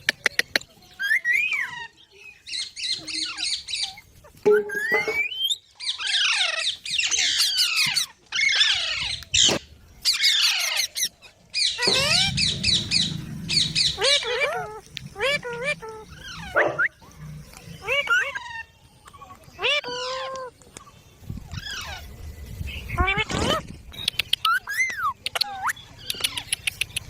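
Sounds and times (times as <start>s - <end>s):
parrot chicks chirping: 0.0s - 27.0s.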